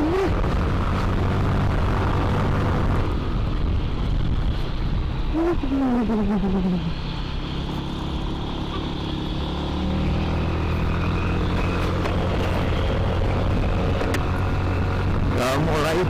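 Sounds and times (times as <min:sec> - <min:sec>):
wind and road noise: 0:00.0 - 0:16.0
scooter engine running: 0:05.4 - 0:14.9.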